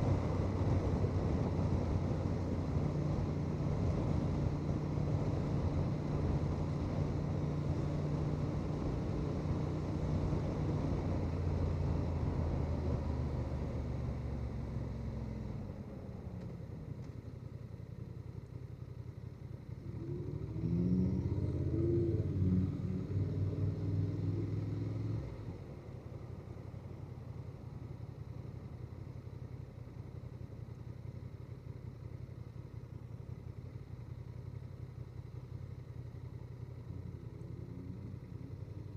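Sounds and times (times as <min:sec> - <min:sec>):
motorcycle engine running: 0:00.0 - 0:38.9
engine rising in pitch: 0:19.8 - 0:26.0, 0:36.9 - 0:38.9.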